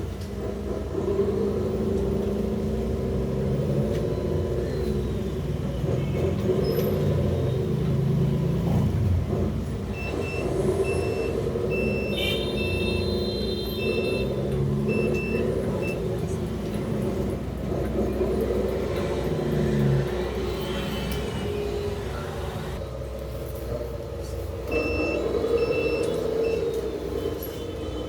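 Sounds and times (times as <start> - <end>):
reversing beeper: 24.7 - 26.8.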